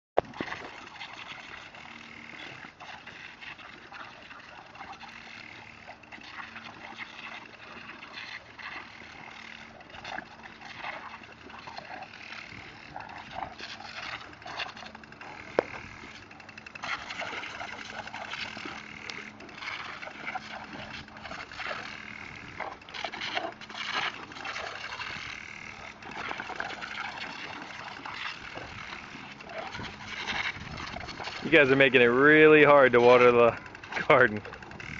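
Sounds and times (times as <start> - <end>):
water splashes: 0.2 - 34.9
garden hose spraying water: 31.2 - 34.7.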